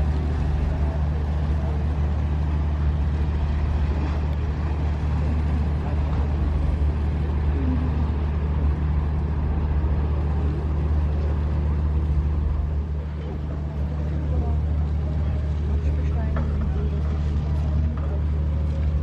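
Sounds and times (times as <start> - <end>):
boat engine droning: 0.0 - 19.0
faint voices: 0.0 - 19.0.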